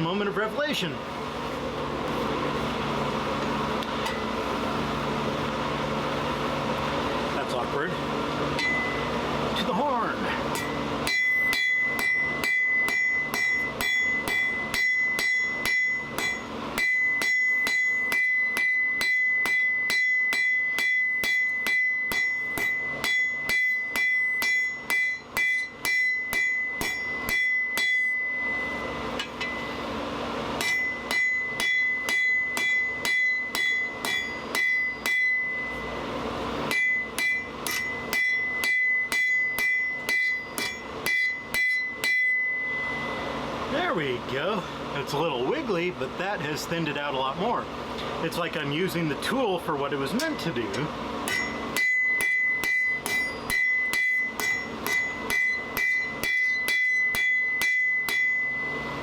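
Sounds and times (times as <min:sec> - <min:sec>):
hammer striking hot steel: 0:08.5 - 0:29.9, 0:30.6 - 0:43.4, 0:50.1 - 0:59.0
anvil ringing: 0:08.6 - 0:09.2, 0:10.5 - 0:29.9, 0:30.6 - 0:36.0, 0:36.7 - 0:43.4, 0:51.2 - 0:59.0.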